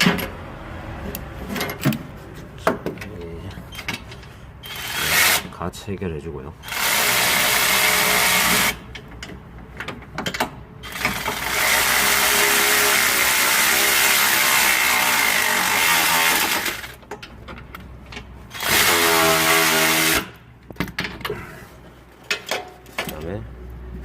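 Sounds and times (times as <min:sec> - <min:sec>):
power tool running: 0:10.8 - 0:17.0, 0:18.5 - 0:20.4.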